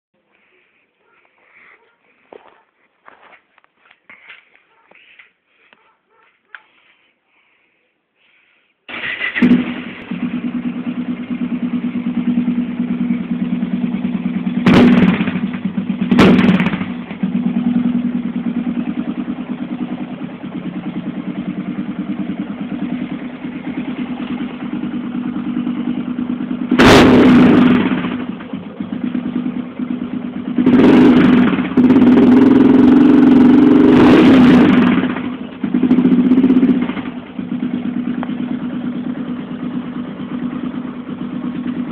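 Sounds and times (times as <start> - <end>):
motorcycle engine idling and revving: 8.9 - 41.9.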